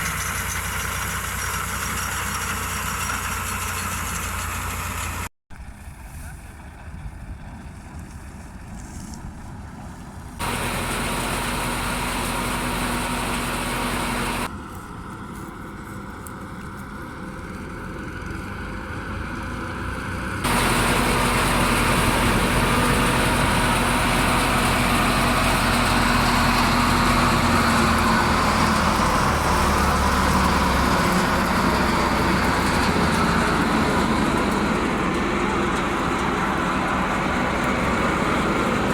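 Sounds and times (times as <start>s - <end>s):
tractor engine running: 0.0s - 5.3s, 10.0s - 38.9s
wheat thresher running: 0.0s - 5.3s, 10.4s - 14.5s, 20.4s - 38.9s.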